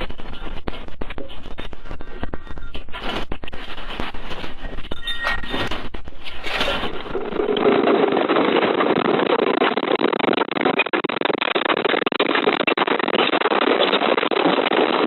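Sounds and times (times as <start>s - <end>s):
rumbling roar with rattling clicks: 5.3s - 8.4s.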